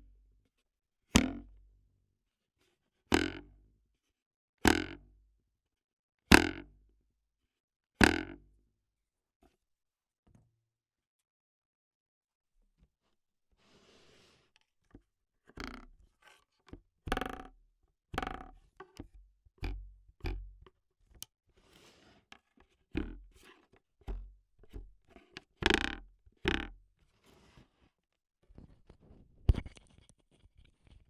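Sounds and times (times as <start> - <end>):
sticks hitting hard surfaces: 23.0 - 23.2.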